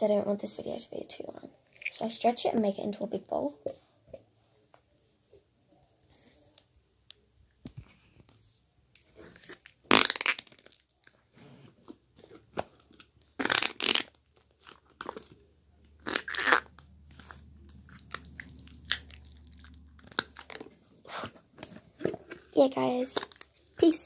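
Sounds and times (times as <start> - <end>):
slime popping: 9.8 - 10.9.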